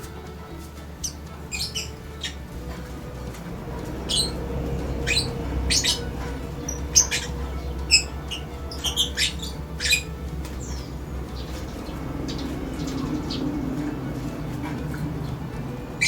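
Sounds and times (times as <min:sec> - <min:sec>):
steady low hum: 0:00.0 - 0:16.0
bird chirping and squawking: 0:01.0 - 0:16.0.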